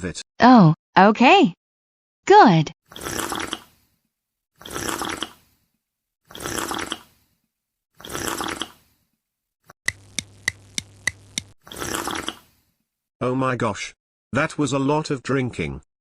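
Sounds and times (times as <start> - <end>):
cartoon watery gulps: 2.9 - 3.9, 4.6 - 5.6, 6.2 - 7.3, 8.0 - 9.0, 11.6 - 12.6.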